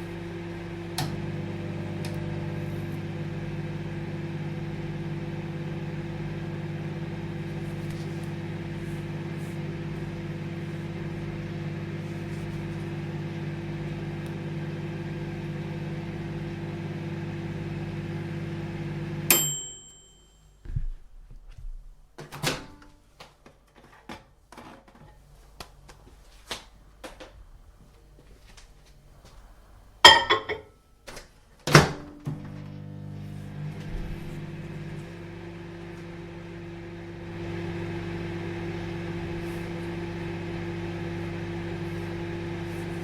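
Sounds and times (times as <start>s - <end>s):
microwave oven humming: 0.0s - 20.6s, 31.8s - 43.0s.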